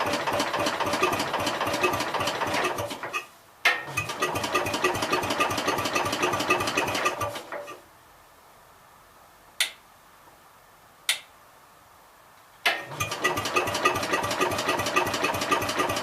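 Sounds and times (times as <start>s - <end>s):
tractor engine running: 0.0s - 3.0s, 4.0s - 7.4s, 12.9s - 16.0s.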